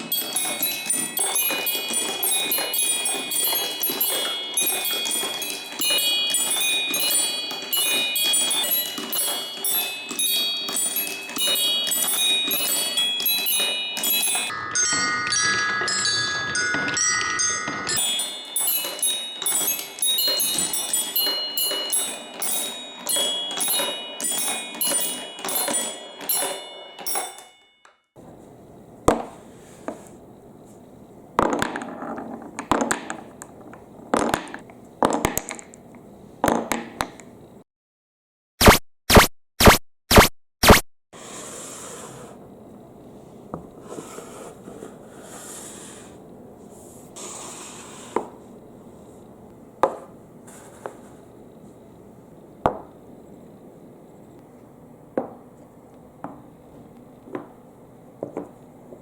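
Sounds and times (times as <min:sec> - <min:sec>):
marbles clacking against blocks: 0:00.0 - 0:14.6, 0:15.7 - 0:27.4, 0:31.4 - 0:35.8
marbles clattering down wooden run: 0:00.1 - 0:14.5, 0:17.9 - 0:27.4.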